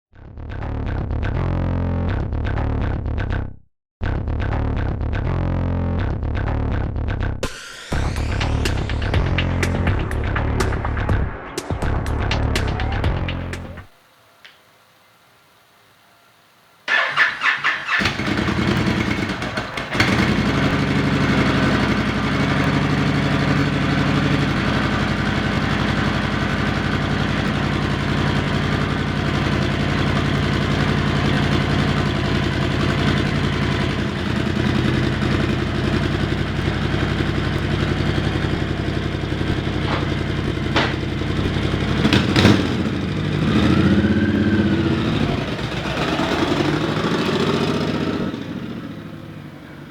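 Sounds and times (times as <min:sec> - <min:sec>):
motorcycle engine starting and idling: 0:13.1 - 0:13.9, 0:16.9 - 0:49.9.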